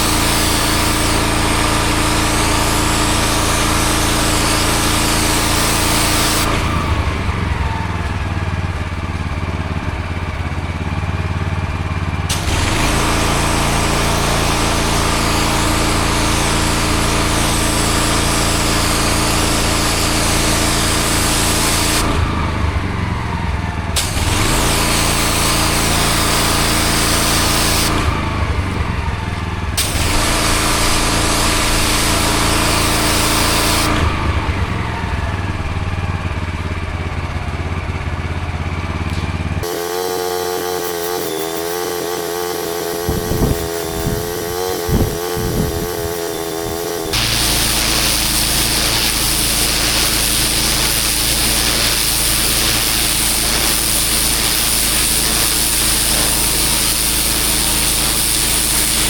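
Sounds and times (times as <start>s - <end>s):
water jet hissing on paving: 0.0s - 7.2s, 12.3s - 22.5s, 23.8s - 28.5s, 29.4s - 34.9s, 39.6s - 59.0s
pressure washer engine running: 0.0s - 59.0s.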